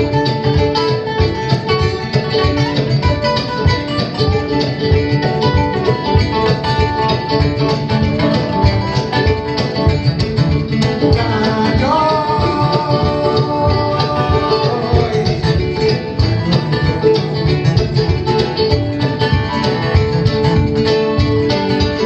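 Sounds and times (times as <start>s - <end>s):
acoustic band with plucked strings: 0.0s - 22.0s.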